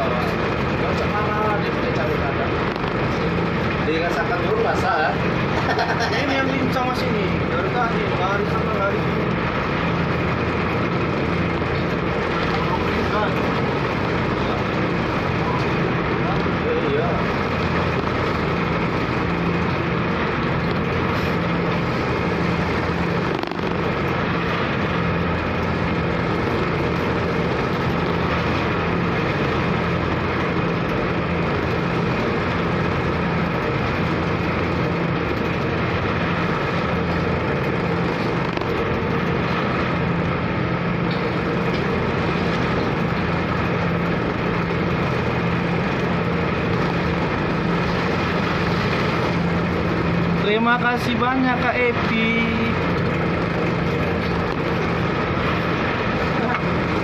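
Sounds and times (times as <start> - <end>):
ferry diesel engine drone: 0.0 - 57.0.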